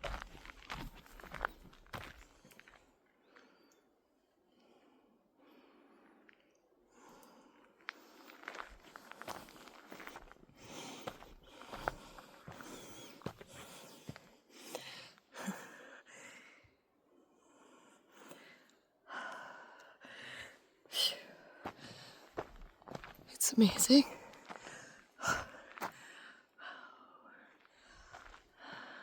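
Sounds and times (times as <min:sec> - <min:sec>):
footsteps on forest trail: 0:00.0 - 0:02.8, 0:07.9 - 0:15.1, 0:21.6 - 0:26.0, 0:27.8 - 0:29.0
person breathing: 0:06.9 - 0:22.6, 0:23.9 - 0:29.0.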